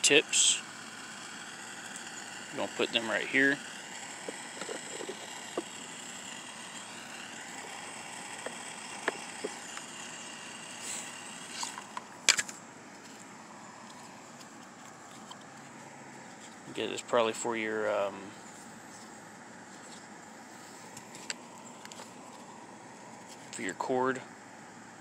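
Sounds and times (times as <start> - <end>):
steady mechanical hum: 0.0 - 25.0.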